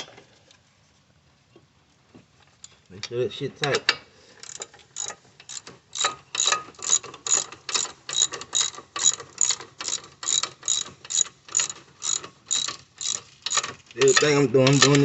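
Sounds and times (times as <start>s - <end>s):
hand ratchet clicking: 3.6s - 15.0s.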